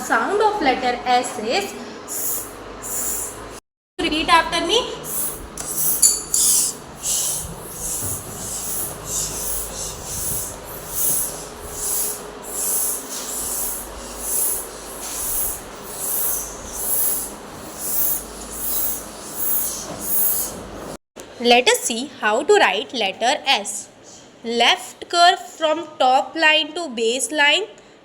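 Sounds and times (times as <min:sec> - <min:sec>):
voice hissing s sound: 0:02.1 - 0:03.4, 0:05.1 - 0:20.6.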